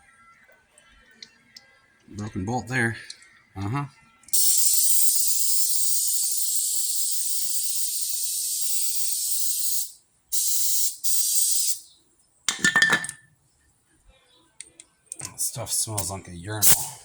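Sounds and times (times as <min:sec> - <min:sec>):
spray can clicks: 0:04.3 - 0:11.8, 0:16.0 - 0:17.0
aerosol spray can hissing: 0:04.3 - 0:11.9, 0:16.6 - 0:17.0.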